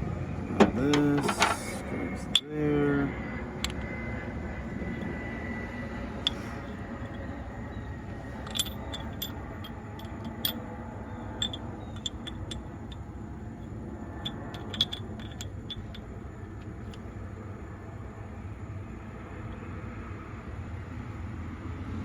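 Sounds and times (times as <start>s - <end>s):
steady low rumble: 0.0s - 21.4s
small clicks of tool parts: 0.6s - 2.5s, 3.6s - 3.9s, 6.2s - 7.2s, 8.4s - 10.6s, 11.4s - 13.1s, 14.2s - 17.0s.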